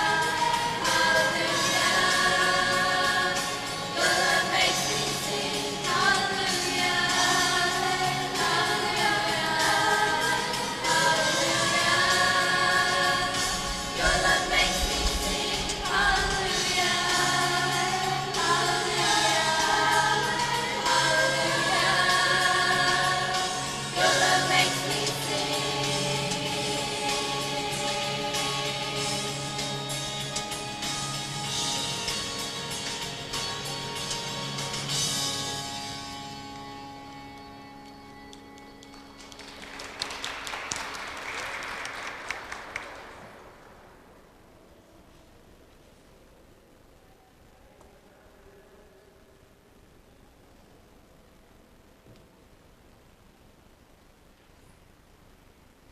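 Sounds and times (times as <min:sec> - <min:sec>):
choir singing: 0:00.0 - 0:32.5.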